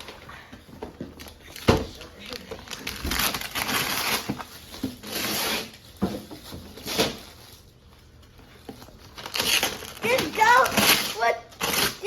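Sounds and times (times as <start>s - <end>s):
wrapping paper rustling and ripping: 2.1s - 5.9s, 9.1s - 12.0s.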